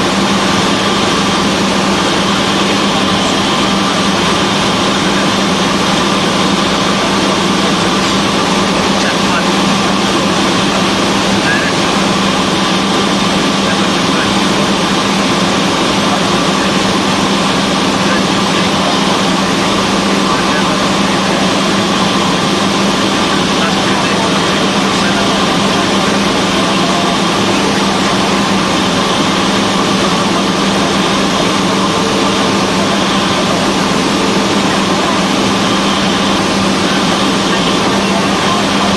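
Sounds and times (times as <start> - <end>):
propeller plane engine droning: 0.0 - 38.9.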